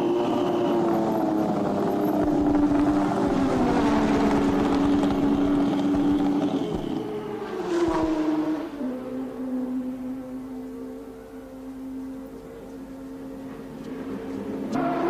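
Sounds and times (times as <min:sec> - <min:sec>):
racing car engine running: 0:00.0 - 0:08.8.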